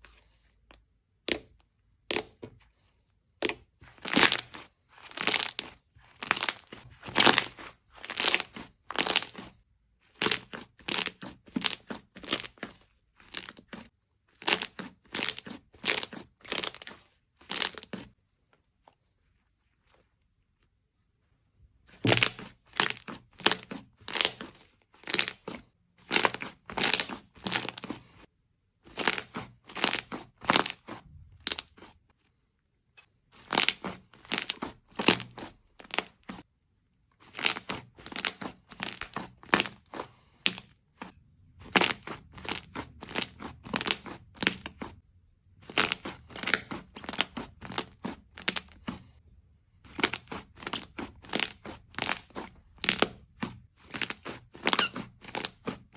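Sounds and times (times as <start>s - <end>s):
slime squeezed with crackling pops: 53.9s - 55.7s.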